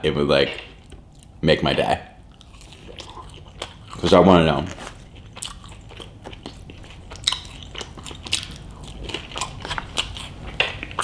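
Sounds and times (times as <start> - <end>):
mouth clicks and crunches: 0.6 - 11.0
person chewing and biting food: 2.2 - 11.0.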